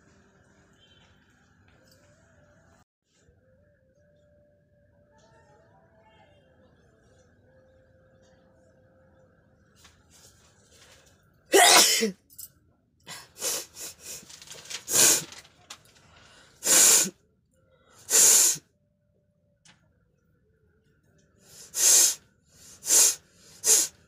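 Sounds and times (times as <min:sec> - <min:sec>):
person sneezing: 0:11.5 - 0:12.2, 0:16.6 - 0:17.1, 0:18.1 - 0:18.6, 0:22.8 - 0:23.9.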